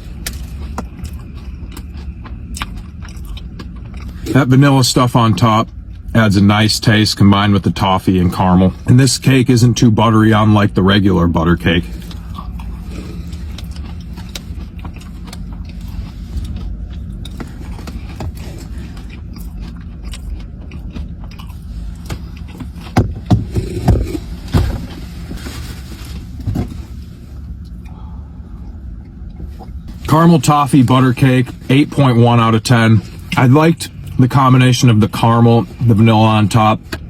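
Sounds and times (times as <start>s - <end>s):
person chewing: 0.0s - 6.2s, 11.6s - 25.1s
steady low hum: 0.0s - 37.0s.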